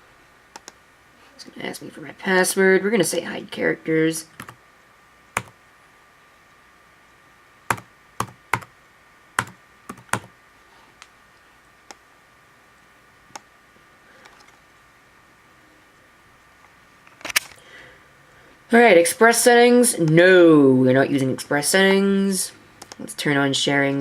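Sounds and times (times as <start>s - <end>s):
keyboard keystrokes: 7.7s - 8.7s, 9.4s - 10.3s.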